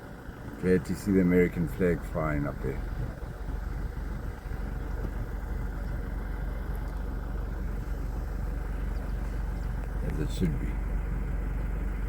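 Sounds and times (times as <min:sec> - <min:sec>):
truck engine running: 0:00.0 - 0:12.0.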